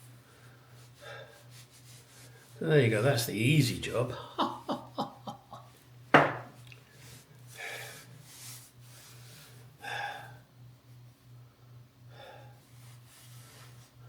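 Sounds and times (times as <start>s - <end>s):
faint rustling of fabric: 0.4s - 2.6s, 12.6s - 14.0s
sharp loud knock: 6.2s - 6.5s.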